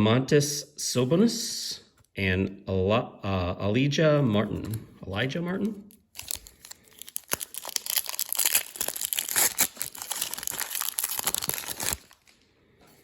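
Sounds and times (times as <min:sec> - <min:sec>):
foil wrapper crinkling and tearing: 0:05.9 - 0:12.4.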